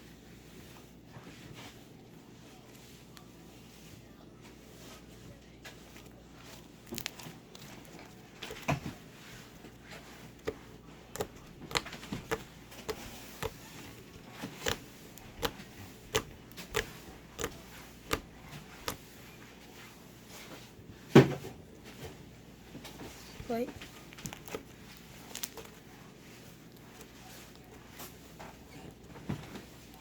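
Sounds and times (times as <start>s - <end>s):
slime clicking and popping: 6.9s - 7.3s, 10.4s - 19.0s, 24.1s - 24.6s.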